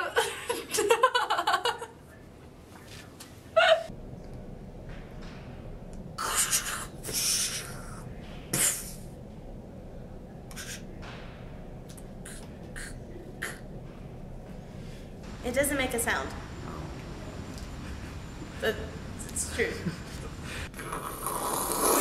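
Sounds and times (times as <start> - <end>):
person making breathy puffs: 6.2 - 8.0, 10.5 - 10.8, 12.2 - 13.6.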